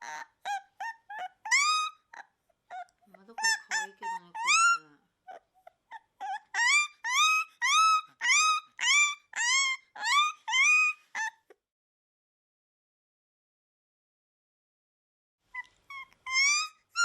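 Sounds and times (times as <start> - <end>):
puppy crying: 0.0 - 11.6, 15.5 - 17.0.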